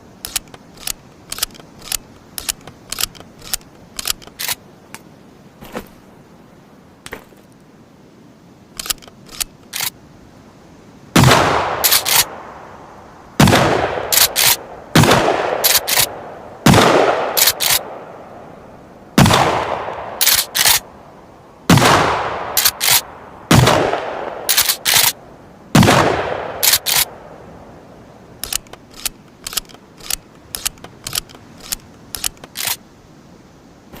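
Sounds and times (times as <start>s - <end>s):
metallic clicks of gun action: 0.2s - 4.6s, 8.8s - 10.0s, 11.8s - 12.3s, 14.1s - 14.6s, 15.6s - 16.1s, 17.4s - 17.8s, 20.2s - 20.8s, 22.6s - 23.0s, 24.5s - 25.2s, 26.6s - 27.1s, 28.4s - 32.8s
shotgun shots: 11.2s - 12.4s, 13.4s - 17.9s, 19.2s - 20.8s, 21.7s - 25.2s, 25.8s - 27.1s.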